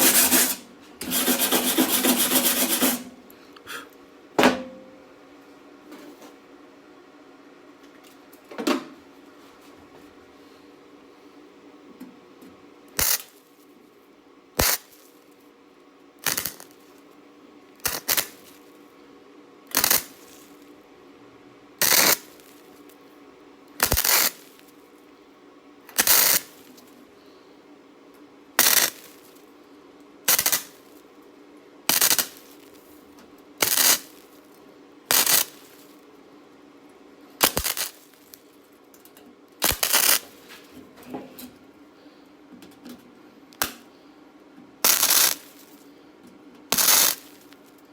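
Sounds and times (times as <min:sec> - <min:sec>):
faint steady hum: 0:00.0 - 0:47.9
short tack welds: 0:13.0 - 0:13.4, 0:14.6 - 0:15.1, 0:16.2 - 0:16.9, 0:17.8 - 0:18.6, 0:19.7 - 0:20.6, 0:21.8 - 0:22.6, 0:23.8 - 0:24.7, 0:25.9 - 0:26.7, 0:28.6 - 0:29.4, 0:30.3 - 0:30.9, 0:31.9 - 0:32.8, 0:33.6 - 0:34.3, 0:35.1 - 0:35.9, 0:37.4 - 0:38.4, 0:39.6 - 0:40.4, 0:44.8 - 0:45.8, 0:46.7 - 0:47.6.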